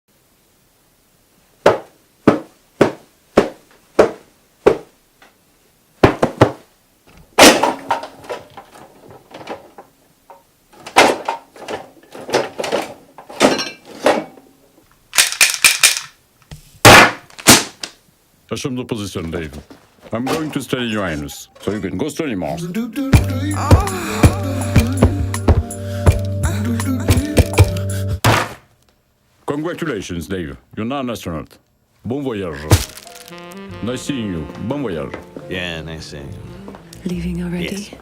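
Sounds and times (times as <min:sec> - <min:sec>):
sharp thuds: 0:32.6 - 0:33.1
scraping and rustling: 0:32.6 - 0:33.4.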